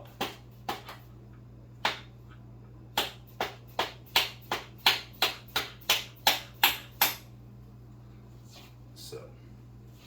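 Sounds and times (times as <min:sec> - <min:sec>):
steady low hum: 0:00.0 - 0:10.0
hammer tapping metal: 0:03.0 - 0:07.3.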